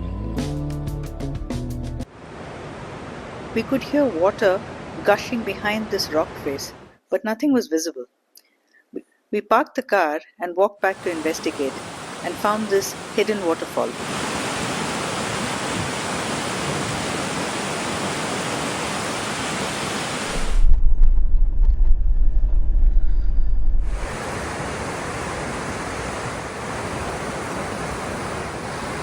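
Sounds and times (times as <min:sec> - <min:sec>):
waterfall roaring: 0:10.9 - 0:20.6, 0:23.9 - 0:29.0
deep uneven rumble: 0:20.3 - 0:24.2.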